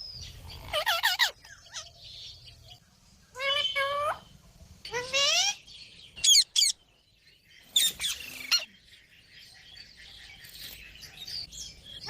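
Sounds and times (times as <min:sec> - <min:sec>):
parrot shrill calls: 0:06.2 - 0:06.8
parrot soft chirping: 0:06.2 - 0:06.8.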